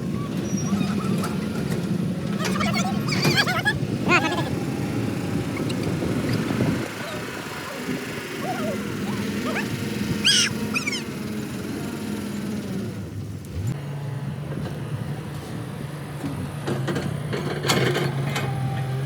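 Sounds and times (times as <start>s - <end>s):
engine humming: 0.0s - 19.0s
engine starting and running: 0.0s - 19.0s
high squeak: 10.2s - 11.0s.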